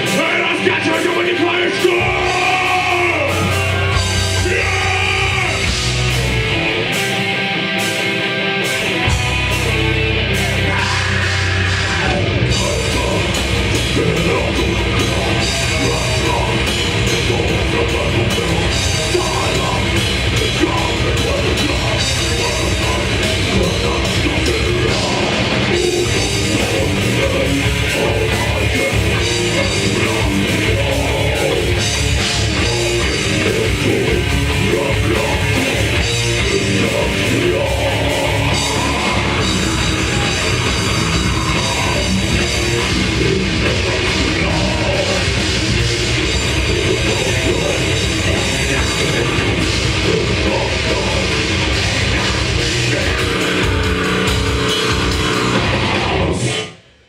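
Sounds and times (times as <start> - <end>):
fast drumming on drum kit: 0.0 - 7.1, 10.4 - 56.3
bass guitar: 0.0 - 57.0
distorted electric guitars: 0.0 - 57.0.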